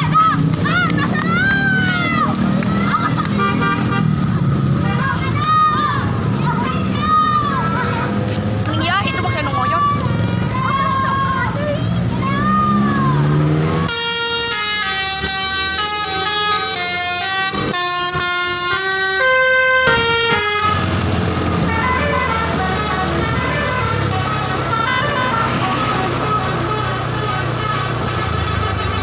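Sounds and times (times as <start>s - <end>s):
bus engine running: 0.0s - 29.0s
bus musical horn melody: 3.1s - 4.4s, 13.8s - 29.0s.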